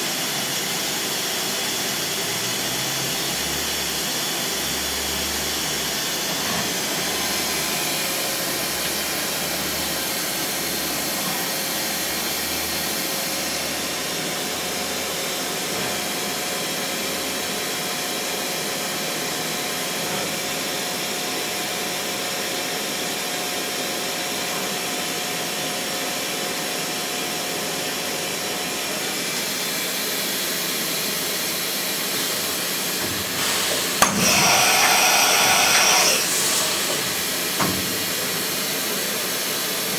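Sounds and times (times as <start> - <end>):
machining center hissing: 31.7 - 39.9
sharp click: 33.0 - 38.1.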